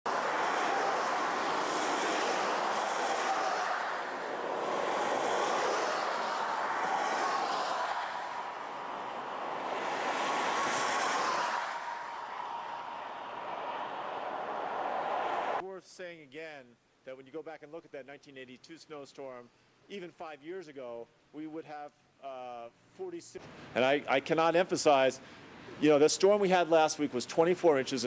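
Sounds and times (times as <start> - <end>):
tyres on snowy road: 0.1 - 15.6.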